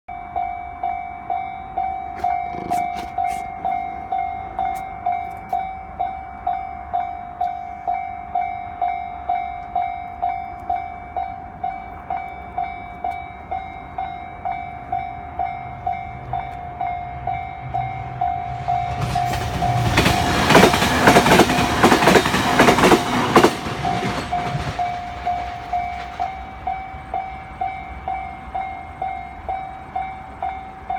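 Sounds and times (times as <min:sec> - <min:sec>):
train wheels clattering on rails: 0:12.0 - 0:30.7.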